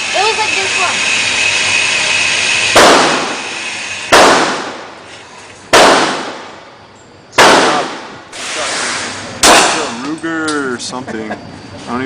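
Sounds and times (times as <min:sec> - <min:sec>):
loud gunshots with echo: 0:02.7 - 0:05.0, 0:05.7 - 0:06.7, 0:07.4 - 0:10.0.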